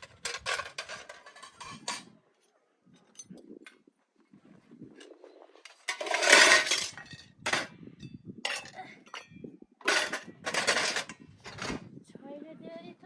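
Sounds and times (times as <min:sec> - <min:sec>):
pots and dishes clattering: 0:00.0 - 0:02.1, 0:05.6 - 0:11.8.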